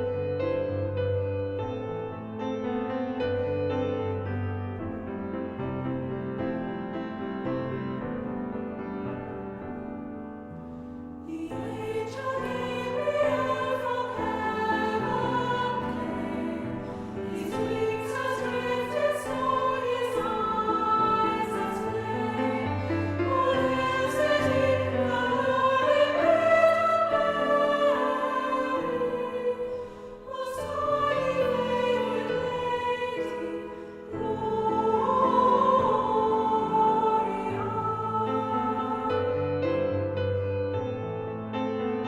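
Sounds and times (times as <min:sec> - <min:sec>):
choir singing with accompaniment: 0:10.6 - 0:41.2.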